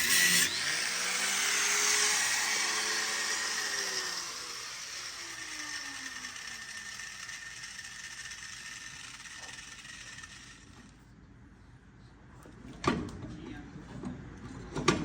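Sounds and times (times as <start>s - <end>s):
grinder whine spinning down: 0.0s - 11.0s.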